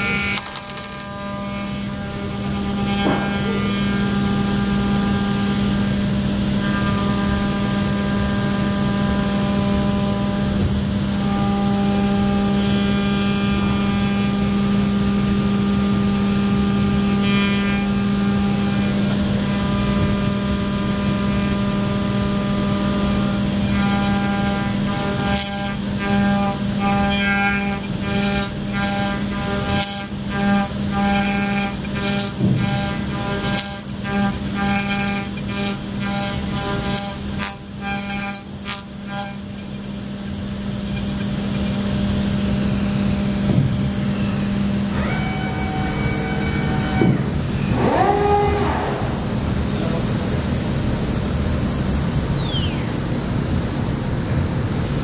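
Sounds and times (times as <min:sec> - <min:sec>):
choppy cutting noise: 0:00.0 - 0:04.7
milling machine humming: 0:00.0 - 0:54.7.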